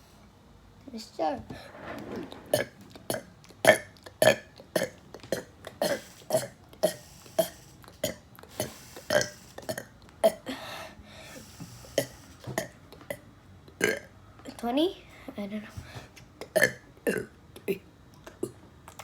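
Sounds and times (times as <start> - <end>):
person burping: 16.4 - 17.8.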